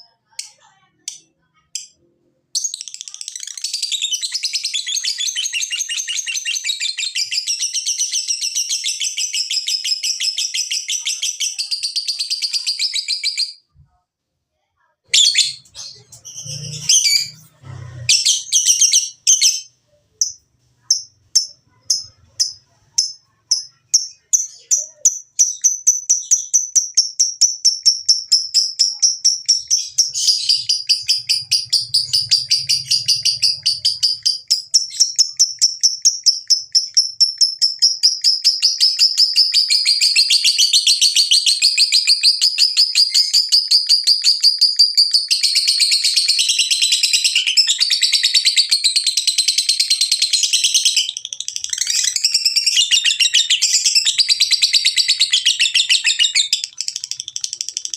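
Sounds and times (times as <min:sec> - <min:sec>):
lovebird chattering trill: 0:15.2 - 0:57.9.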